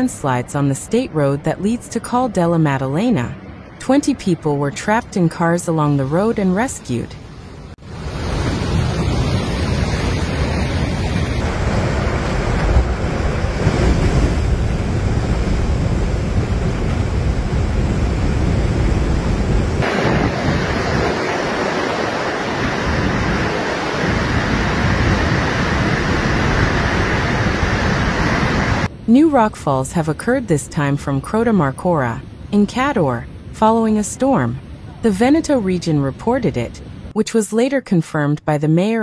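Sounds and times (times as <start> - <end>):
floodwater rushing: 7.9 - 28.9
wind buffeting microphone: 8.0 - 28.9.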